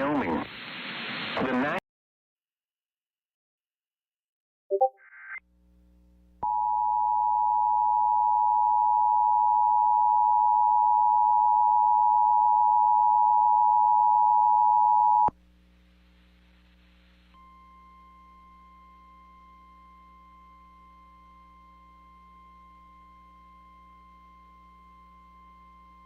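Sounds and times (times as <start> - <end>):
faint single steady tone: 17.3 - 26.0.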